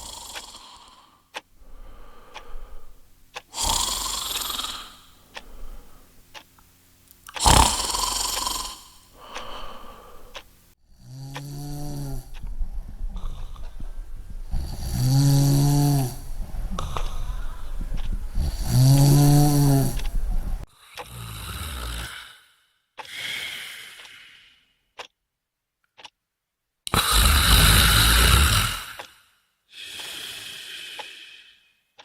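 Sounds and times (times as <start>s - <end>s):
loud snoring: 0.0s - 6.1s, 7.2s - 22.4s, 26.9s - 29.1s.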